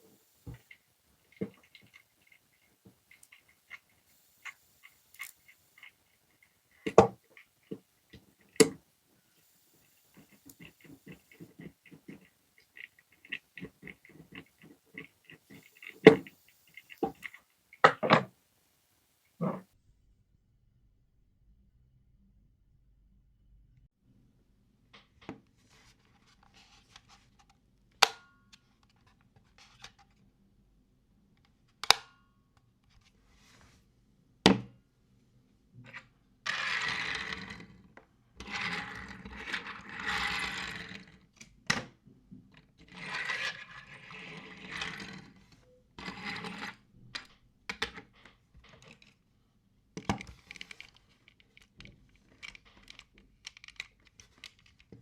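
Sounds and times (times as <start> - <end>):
rustling and scraping: 0.0 - 18.3, 25.2 - 27.6, 32.9 - 33.9, 42.3 - 49.2.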